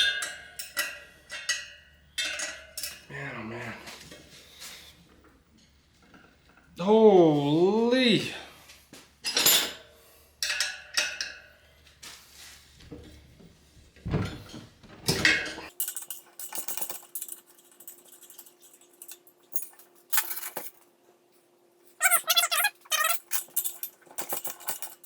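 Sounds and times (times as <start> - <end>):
metal tools clinking: 0.0 - 3.1, 14.1 - 20.8, 22.0 - 25.0.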